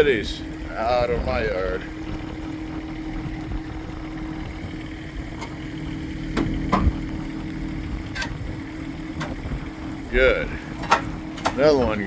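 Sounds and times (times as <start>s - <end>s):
vehicle engine idling: 0.0s - 12.0s
wind rumbling on microphone: 0.0s - 12.0s
sharp clicks and knocks: 6.3s - 8.4s, 9.2s - 9.5s, 10.8s - 12.0s.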